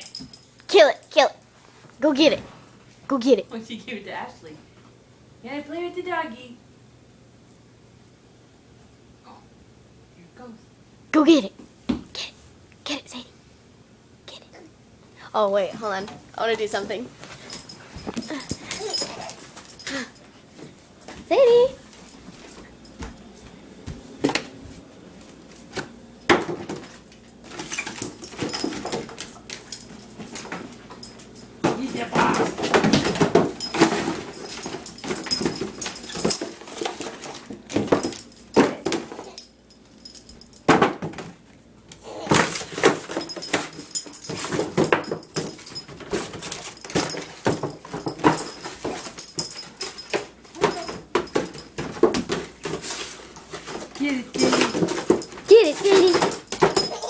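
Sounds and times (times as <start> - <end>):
dog play noises: 15.6 - 24.8, 27.4 - 40.6, 42.1 - 57.0.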